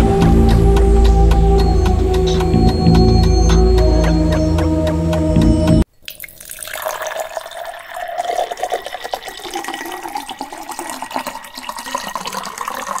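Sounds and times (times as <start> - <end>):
water running and splashing: 6.1 - 13.0.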